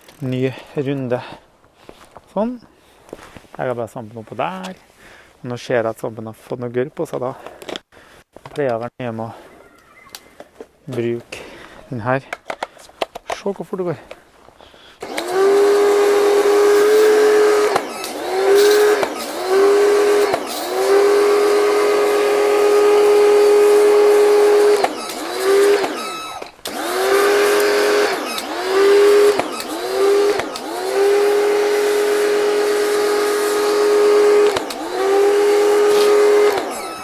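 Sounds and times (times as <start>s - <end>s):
pressure washer pump motor humming: 15.0s - 37.0s.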